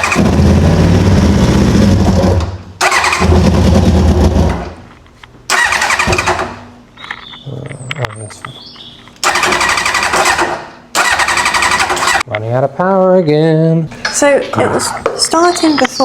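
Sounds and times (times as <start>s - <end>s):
motorcycle engine cranking: 0.0s - 4.8s, 5.5s - 7.4s, 9.2s - 12.3s.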